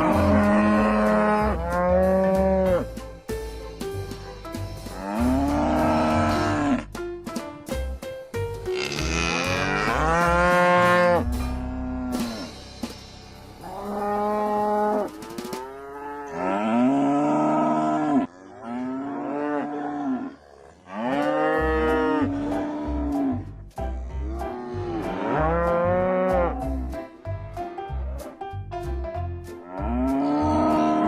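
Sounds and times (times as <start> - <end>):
cattle mooing: 5.0 - 6.8, 8.7 - 12.2, 13.7 - 23.3.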